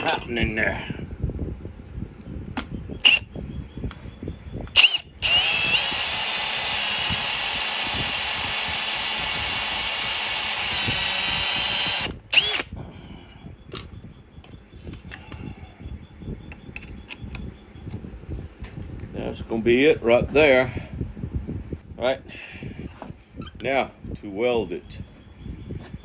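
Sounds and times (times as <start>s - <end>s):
electric drill whining: 3.0s - 3.3s, 4.7s - 12.7s.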